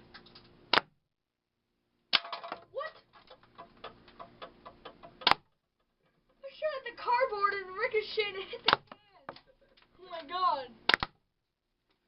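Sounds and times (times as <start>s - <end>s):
pellets striking cardboard target: 0.7s - 0.9s, 2.1s - 2.6s, 10.9s - 11.2s
airsoft gun shots: 10.9s - 11.2s.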